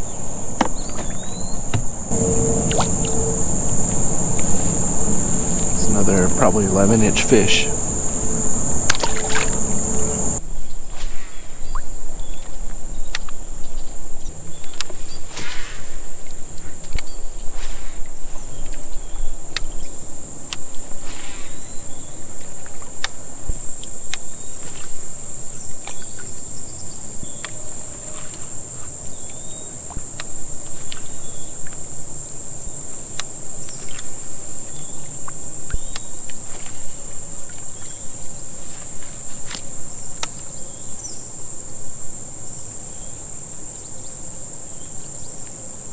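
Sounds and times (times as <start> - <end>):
insects buzzing: 0.0 - 10.4.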